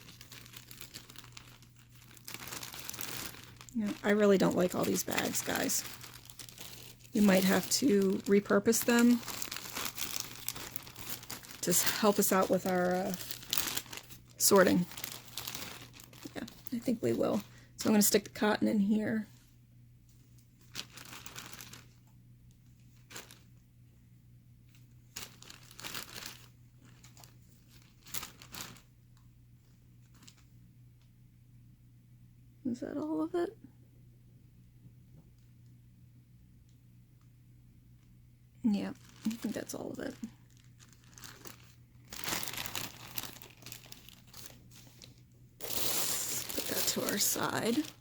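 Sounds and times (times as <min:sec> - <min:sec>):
plastic bag crinkling: 0:00.0 - 0:18.6, 0:20.6 - 0:23.6, 0:24.7 - 0:28.9, 0:30.0 - 0:30.5, 0:38.7 - 0:48.0.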